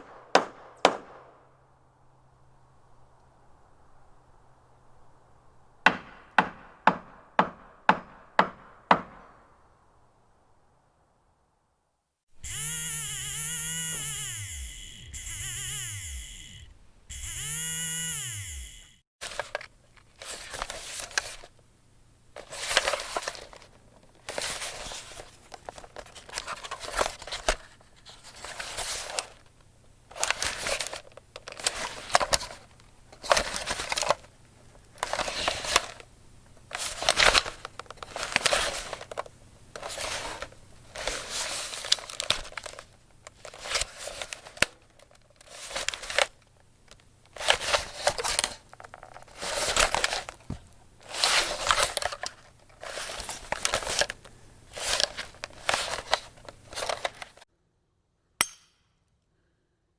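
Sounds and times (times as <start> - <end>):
small motor whining: 12.4 - 19.0
camera handling rustling and scraping: 47.0 - 57.4.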